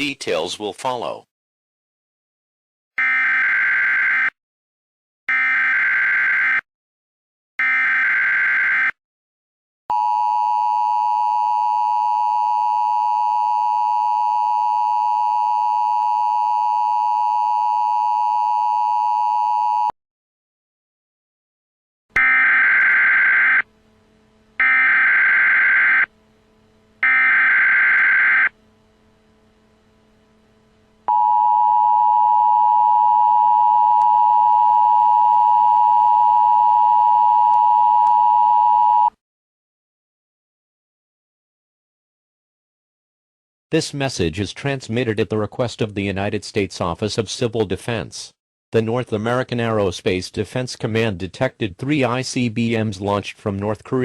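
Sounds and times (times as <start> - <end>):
faint low hum: 22.8 - 34.2.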